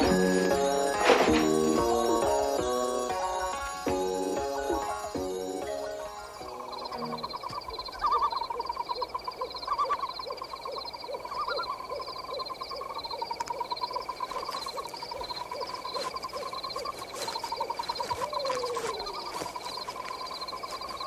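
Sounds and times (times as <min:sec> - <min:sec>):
high trilling chorus: 0:00.0 - 0:10.2
owl hooting: 0:00.0 - 0:21.0.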